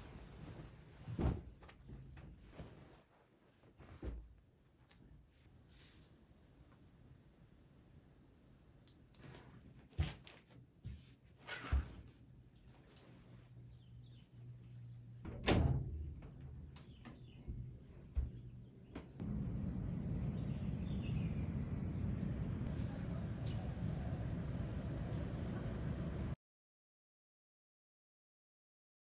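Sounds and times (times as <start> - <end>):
ambient noise: 19.2 - 26.4.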